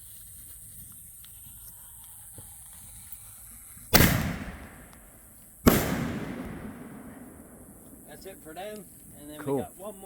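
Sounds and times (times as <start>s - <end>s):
fireworks explosions: 3.9s - 9.2s.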